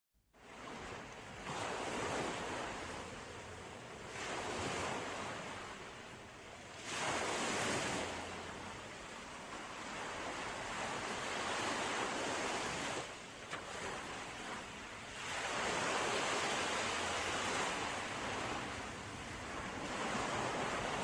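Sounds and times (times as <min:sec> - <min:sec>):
sea waves washing ashore: 0:00.4 - 0:21.0.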